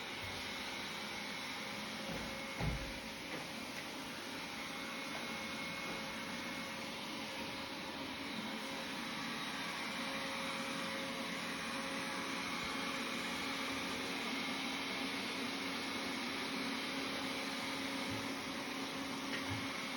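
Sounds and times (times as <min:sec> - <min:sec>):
robot vacuum cleaner whirring: 0:00.0 - 0:19.9.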